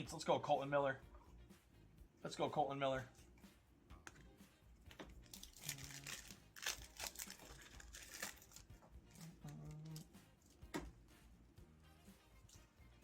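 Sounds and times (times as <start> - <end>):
card pack wrapper crinkling: 5.2 - 10.1.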